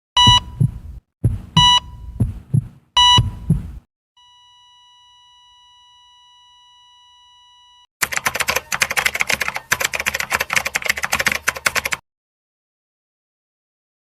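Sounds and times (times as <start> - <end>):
heartbeat thumps: 0.2 - 3.9
heart monitor beeps: 0.2 - 4.6
flatline tone: 4.2 - 7.9.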